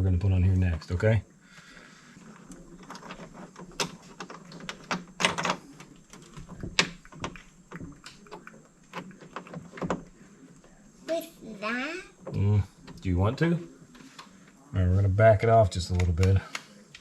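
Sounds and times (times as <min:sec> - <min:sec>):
hardware clicks and knocks: 0:02.4 - 0:10.2.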